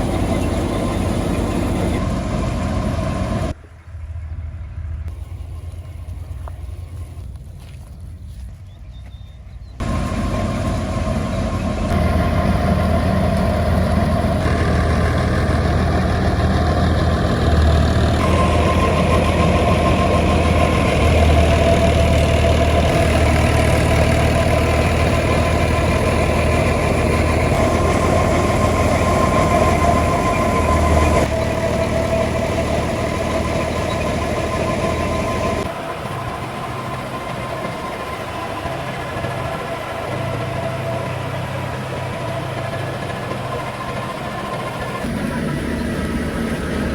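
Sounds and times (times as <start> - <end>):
engine running machinery: 0.0 - 8.5, 9.8 - 46.9.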